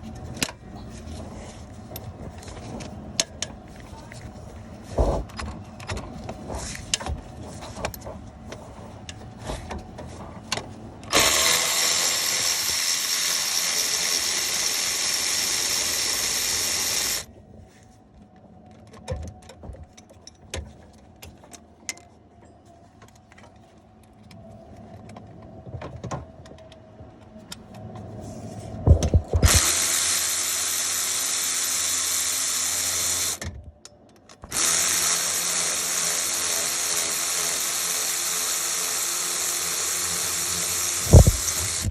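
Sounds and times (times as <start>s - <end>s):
power tool with socket running: 11.1s - 17.3s, 29.4s - 33.4s, 34.5s - 41.9s.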